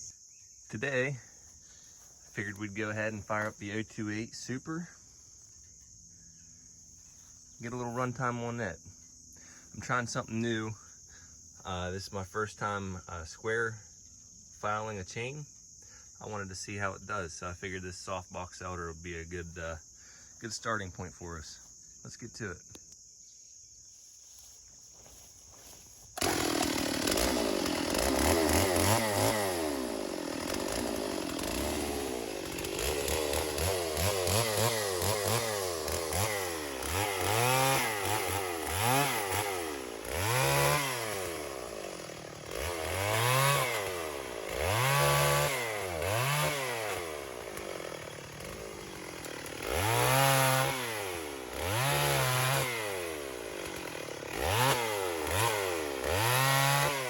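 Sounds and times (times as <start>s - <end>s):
chainsaw revving and cutting wood: 1.1s - 19.9s, 25.1s - 57.0s.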